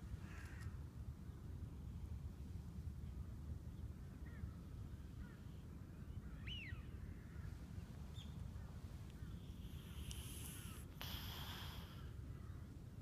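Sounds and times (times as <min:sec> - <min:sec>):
faint bird calls: 0:00.1 - 0:00.8, 0:04.1 - 0:12.8.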